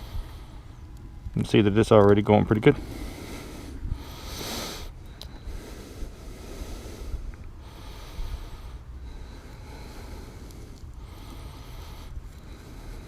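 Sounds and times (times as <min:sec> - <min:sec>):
low steady rumble: 0:00.0 - 0:13.0
hissing exhales: 0:02.8 - 0:13.0.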